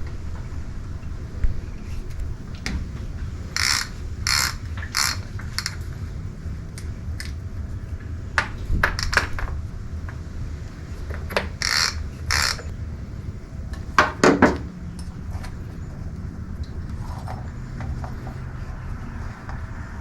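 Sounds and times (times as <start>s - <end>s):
ratchet wrench turning: 3.5s - 5.9s, 11.2s - 12.7s.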